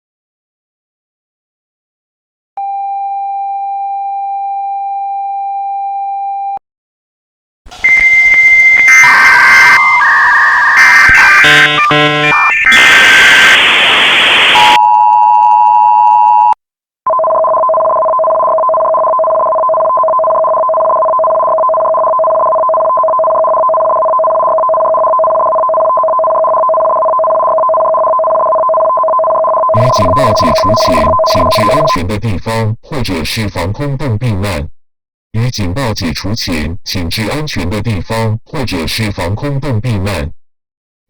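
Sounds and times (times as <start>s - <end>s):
burst of static noise: 7.7s - 14.8s, 29.8s - 32.0s
steady two-tone alert tone: 7.8s - 12.9s, 27.6s - 32.0s
shifting electronic beeps: 7.8s - 14.8s, 29.8s - 32.0s.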